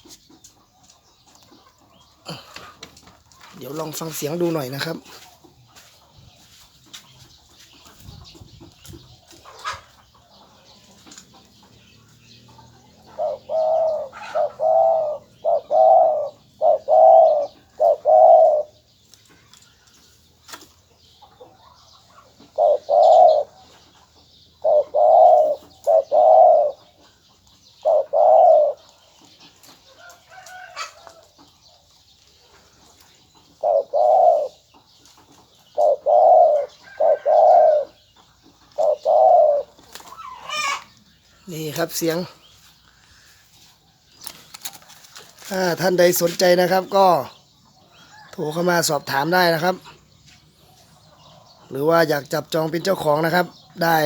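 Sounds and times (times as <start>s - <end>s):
dove cooing: 8.1s - 18.9s, 22.1s - 23.9s, 24.5s - 29.0s, 33.4s - 42.4s.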